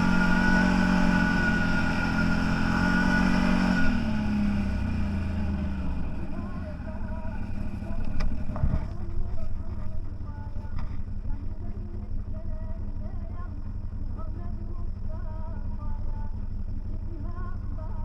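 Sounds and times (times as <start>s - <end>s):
off-road vehicle engine running: 0.0s - 18.0s.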